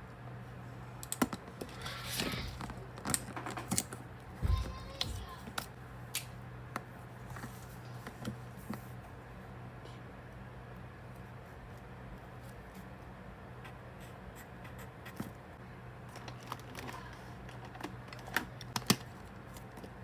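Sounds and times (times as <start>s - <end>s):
paper rustling: 1.7s - 5.6s.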